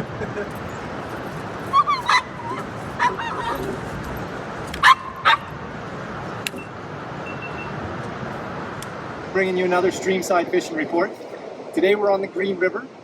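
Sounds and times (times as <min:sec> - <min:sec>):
steady rushing background: 0:00.0 - 0:07.0
dog yipping and whining: 0:00.6 - 0:05.5
dog barking loudly: 0:01.6 - 0:04.2, 0:04.8 - 0:05.6.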